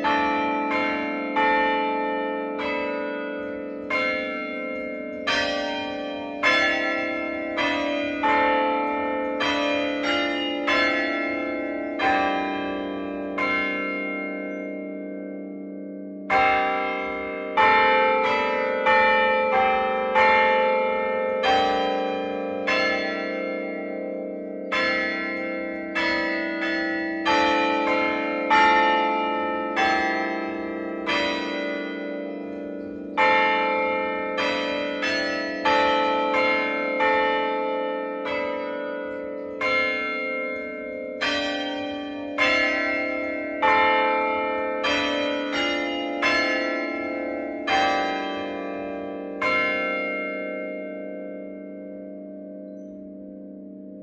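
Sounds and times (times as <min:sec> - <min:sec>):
church bells ringing: 0:00.0 - 0:54.0.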